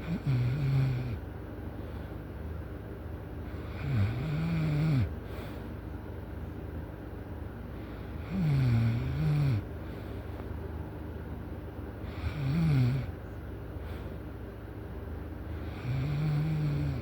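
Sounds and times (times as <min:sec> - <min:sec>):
loud snoring: 0:00.0 - 0:01.2, 0:03.6 - 0:05.1, 0:08.2 - 0:09.7, 0:12.1 - 0:13.1, 0:15.6 - 0:17.0.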